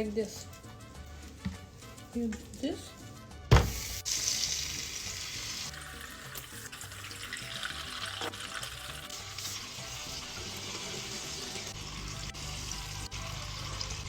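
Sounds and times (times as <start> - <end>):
thump: 3.5 - 4.0
food sizzling in hot oil: 3.6 - 14.0.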